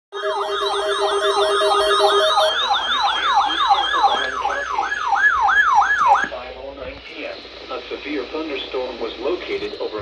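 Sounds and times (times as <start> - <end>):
steady lower tones: 0.1 - 5.7
electronic siren sweeping downward: 0.1 - 6.3.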